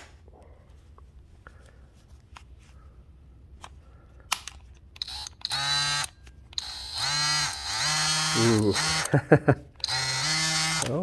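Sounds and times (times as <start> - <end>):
oscillating multi-tool buzzing: 5.0 - 9.1, 9.8 - 11.0.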